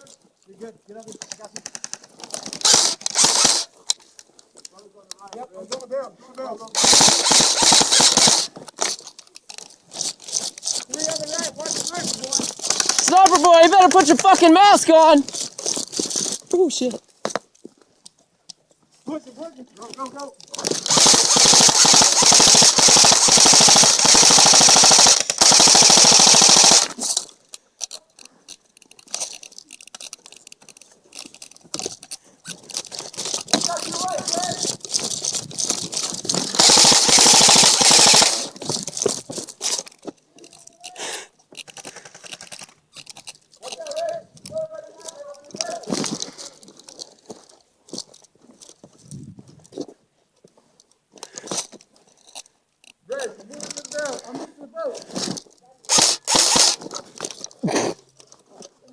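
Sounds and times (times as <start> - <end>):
faint clicks and rustling: 0.0 - 58.9
airsoft rifle full-auto fire: 2.6 - 3.7, 6.8 - 8.6, 12.6 - 13.3, 20.7 - 27.0, 36.3 - 38.5, 55.9 - 56.8.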